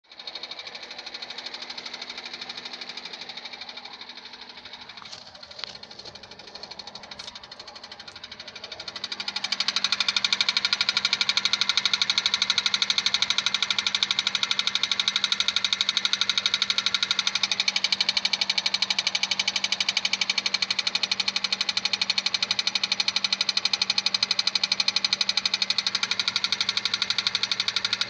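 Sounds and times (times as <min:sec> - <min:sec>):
car engine humming: 0:00.1 - 0:19.6, 0:25.1 - 0:28.0
engine ticking knock: 0:00.1 - 0:28.0.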